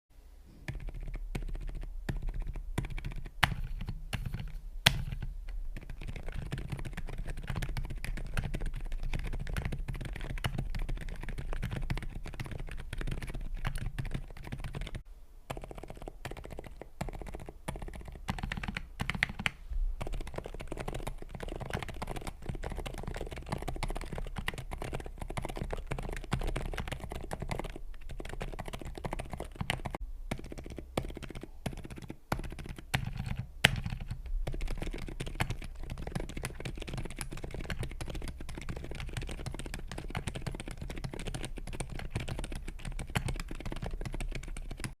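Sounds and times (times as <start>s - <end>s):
mechanical keyboard typing: 0.7s - 45.0s.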